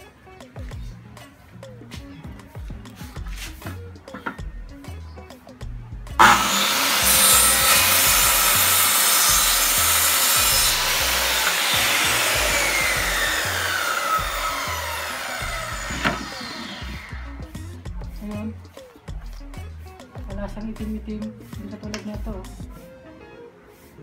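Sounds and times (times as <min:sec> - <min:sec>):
circular saw cutting board: 0:06.2 - 0:17.4.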